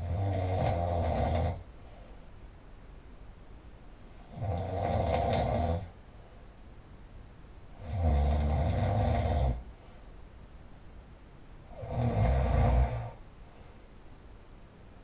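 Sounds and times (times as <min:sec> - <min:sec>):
person snoring loudly: 0:00.0 - 0:01.6, 0:04.2 - 0:05.9, 0:07.8 - 0:09.6, 0:11.7 - 0:13.2.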